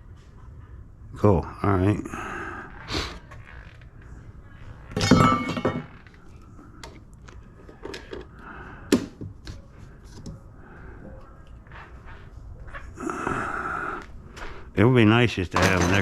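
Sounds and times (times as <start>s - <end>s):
tools clattering: 4.9s - 6.1s, 15.5s - 16.0s.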